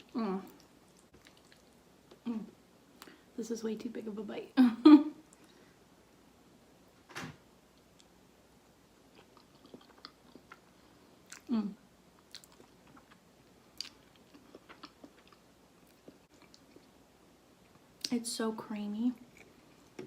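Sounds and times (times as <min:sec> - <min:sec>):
chewing with wet mouth sounds: 0:00.4 - 0:02.2, 0:09.1 - 0:11.5, 0:12.2 - 0:17.0, 0:19.2 - 0:20.0.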